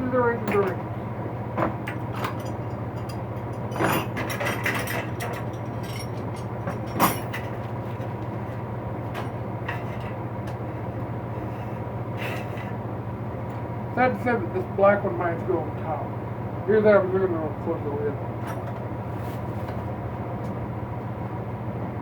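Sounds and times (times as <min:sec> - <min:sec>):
steady low hum: 0:00.0 - 0:22.0
metal wrenches clinking: 0:02.2 - 0:07.6.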